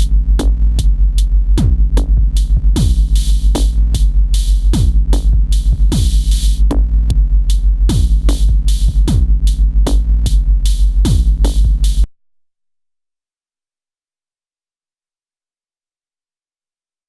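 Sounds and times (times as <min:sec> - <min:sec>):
deep sliding bass hits: 0:00.0 - 0:12.1
electronic music with drum machine: 0:00.0 - 0:12.1.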